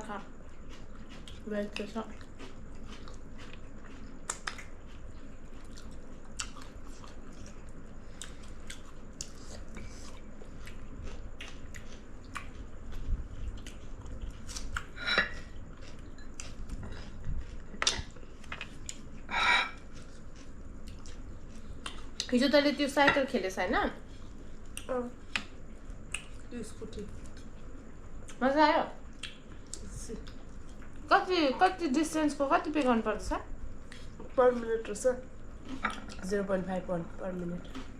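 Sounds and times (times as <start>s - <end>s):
person chewing and biting: 0.5s - 1.4s, 2.1s - 19.2s, 19.8s - 22.2s.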